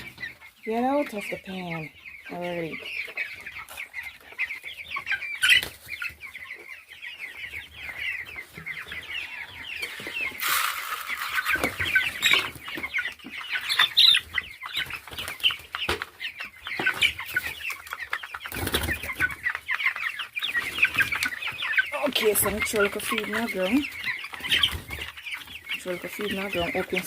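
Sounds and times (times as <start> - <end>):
chicks peeping: 0.0 - 27.0
rustling: 9.8 - 14.0.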